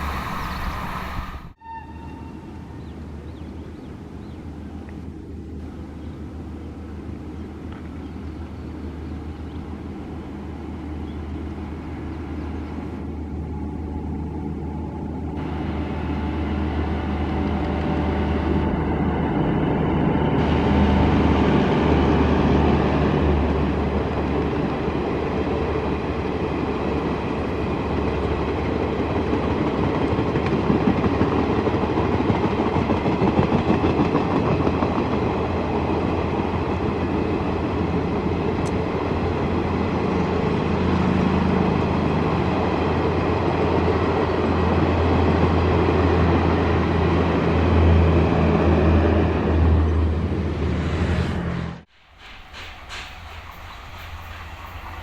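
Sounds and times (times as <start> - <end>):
low hum: 0.0 - 2.2
train wheels clattering on rail: 27.9 - 37.1, 51.9 - 55.0.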